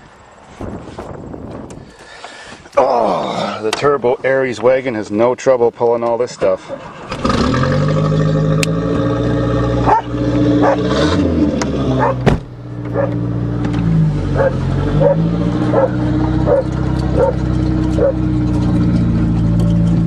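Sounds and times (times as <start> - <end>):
car engine running: 6.8 - 20.0.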